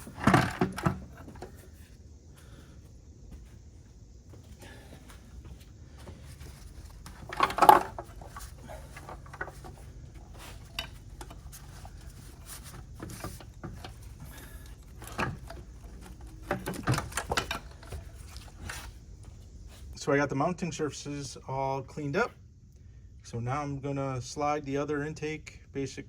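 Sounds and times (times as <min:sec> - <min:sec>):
metal tools clinking and knocking: 0:06.4 - 0:18.8
metal clatter: 0:06.4 - 0:18.9.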